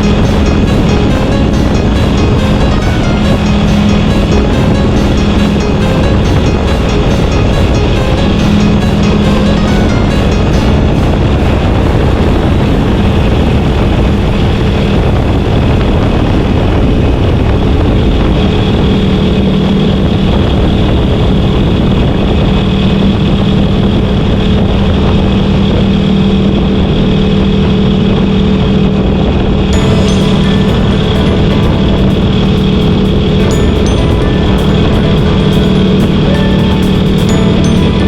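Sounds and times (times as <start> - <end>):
motorcycle engine humming: 0.0 - 27.0
wind and road noise: 0.0 - 38.0.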